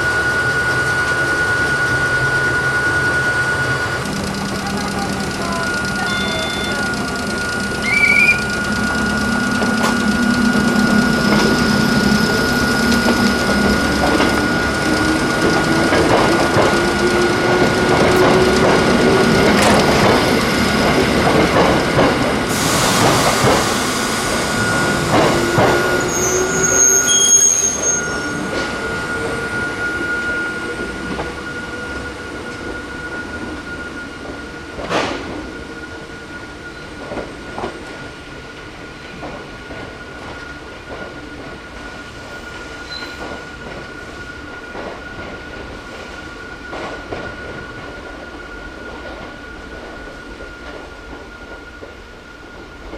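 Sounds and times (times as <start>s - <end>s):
high wheel squeals: 0.0s - 21.2s, 22.5s - 34.6s
train motors whining: 0.6s - 33.6s
wheels clattering on rails: 4.0s - 27.0s.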